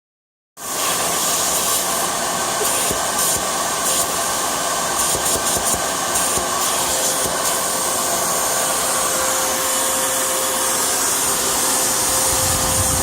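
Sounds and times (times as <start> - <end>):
air leak hissing: 0.6 - 9.9.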